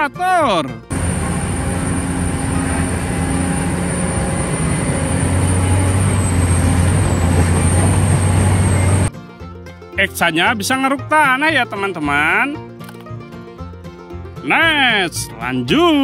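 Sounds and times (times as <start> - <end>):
excavator engine humming: 0.9 - 9.1.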